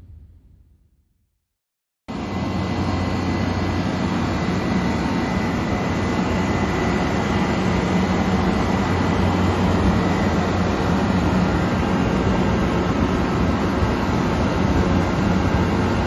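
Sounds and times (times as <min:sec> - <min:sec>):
steady high whine: 0:00.0 - 0:00.8, 0:02.1 - 0:16.0
low hum: 0:00.0 - 0:01.2
refrigeration fan rush: 0:02.1 - 0:16.0.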